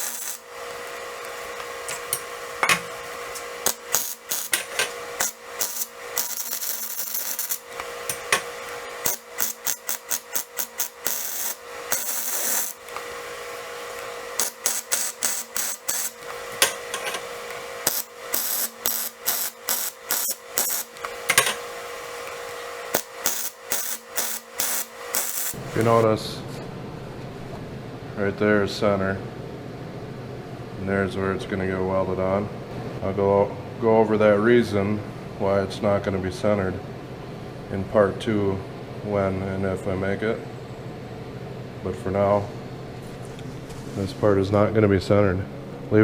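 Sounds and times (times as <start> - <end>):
hissing bursts: 0.0 - 0.5
sharp rasping strokes on steel: 0.0 - 0.5, 3.3 - 13.0, 14.4 - 17.2, 17.8 - 21.0
steady low hum: 0.0 - 46.0.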